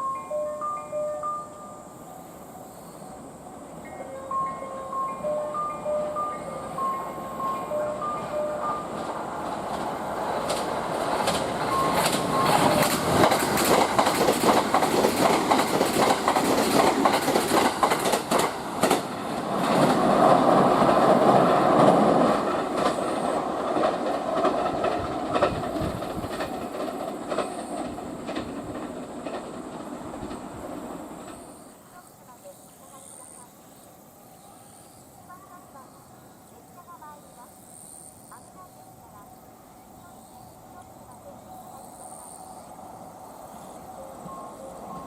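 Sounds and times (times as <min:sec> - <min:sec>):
train running noise: 0:00.0 - 0:45.0
train wheels clickety-clack: 0:06.9 - 0:31.6.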